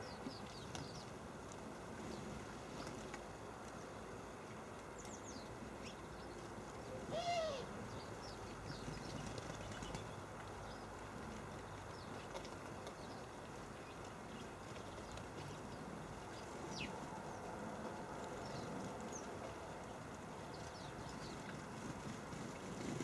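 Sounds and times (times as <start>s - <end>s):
lower rising and falling bird call: 7.1s - 7.7s.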